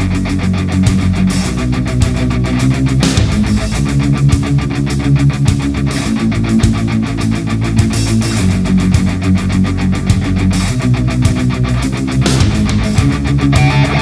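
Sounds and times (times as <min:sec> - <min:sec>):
electric guitar: 0:00.0 - 0:14.0
hard rock music: 0:00.0 - 0:14.0
fast drumbeat: 0:03.0 - 0:04.6, 0:12.3 - 0:14.0.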